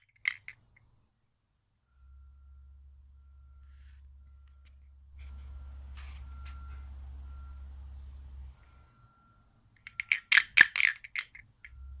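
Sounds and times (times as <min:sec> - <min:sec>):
low steady hum: 0:00.0 - 0:12.0
sharp ringing clinks: 0:08.6 - 0:12.0.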